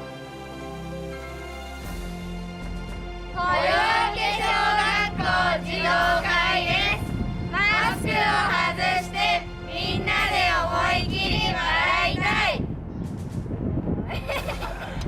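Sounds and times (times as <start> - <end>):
children singing in chorus: 3.4 - 7.0, 7.6 - 12.4.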